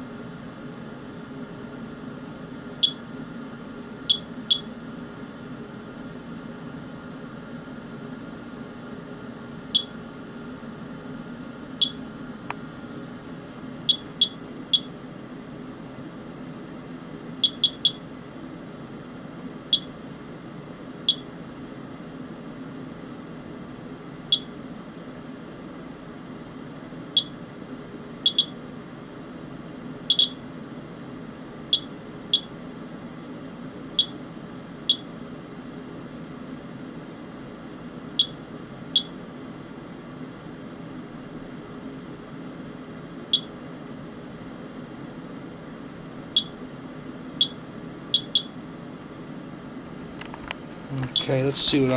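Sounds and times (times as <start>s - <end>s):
steady low hum: 0.0s - 51.9s
geiger counter beeps: 4.1s - 4.7s, 13.9s - 14.9s, 17.4s - 18.0s, 21.1s - 21.3s, 24.3s - 24.5s, 28.3s - 28.6s, 30.1s - 30.4s, 31.8s - 32.5s, 34.9s - 35.1s, 43.3s - 43.5s, 46.4s - 46.6s, 48.2s - 48.5s.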